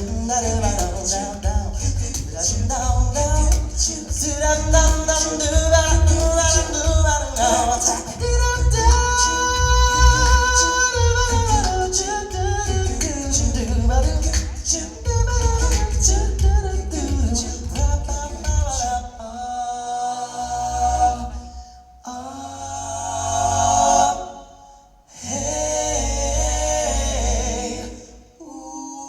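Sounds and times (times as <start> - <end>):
person singing: 0.0 - 24.6
low bass pulse: 1.4 - 7.3.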